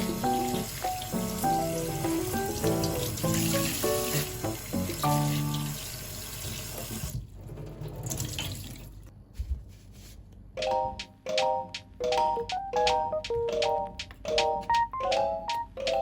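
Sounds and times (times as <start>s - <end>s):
background music: 0.0s - 5.8s, 10.6s - 16.0s
tap water running into sink: 0.0s - 8.9s.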